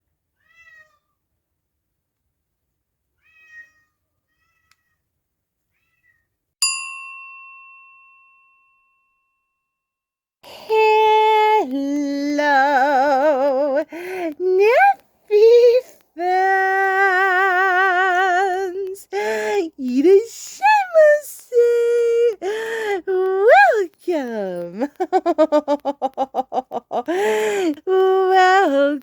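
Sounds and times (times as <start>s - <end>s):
cat meowing: 0.4s - 1.2s, 3.2s - 5.0s, 5.7s - 6.3s
chime ding: 6.6s - 9.7s.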